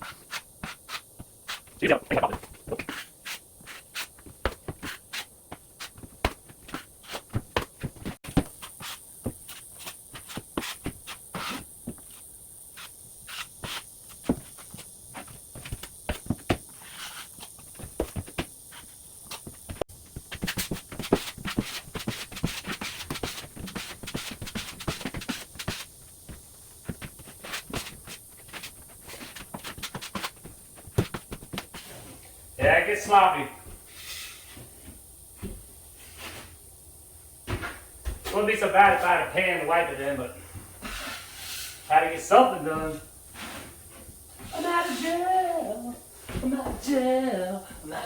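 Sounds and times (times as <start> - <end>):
knife scraping joint compound: 33.9 - 34.7.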